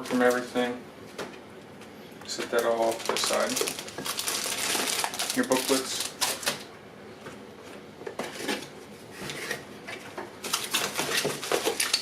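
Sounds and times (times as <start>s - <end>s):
packaging being handled: 2.3s - 6.7s.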